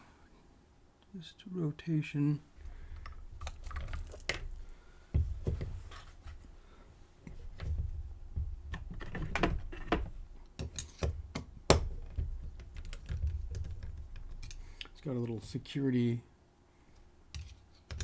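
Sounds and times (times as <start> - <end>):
handling knocks: 2.6 - 6.6, 7.3 - 14.6.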